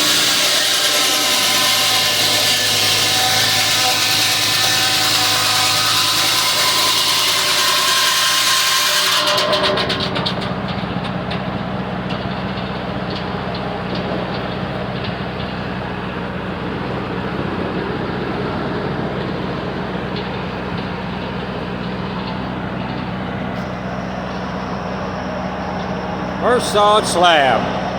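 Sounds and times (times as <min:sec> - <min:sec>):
saw blade cutting through log: 0:00.0 - 0:10.6
sawmill engine running: 0:00.0 - 0:27.9.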